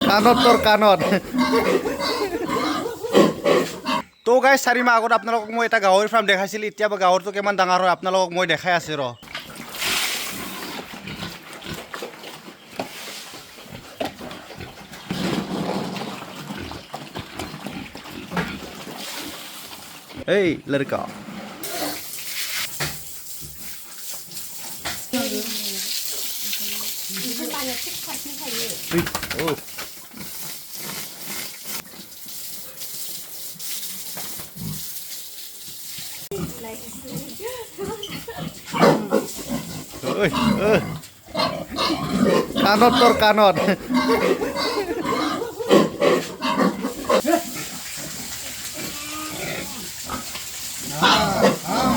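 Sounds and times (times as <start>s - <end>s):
pigs grunting: 0.0s - 4.1s, 9.8s - 12.5s, 13.6s - 19.2s, 36.3s - 51.9s.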